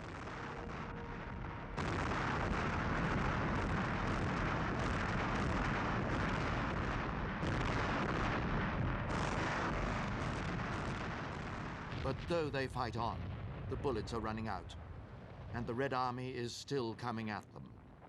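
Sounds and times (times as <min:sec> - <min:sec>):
gunfire: 0:00.0 - 0:12.6
artillery explosions: 0:00.0 - 0:16.0.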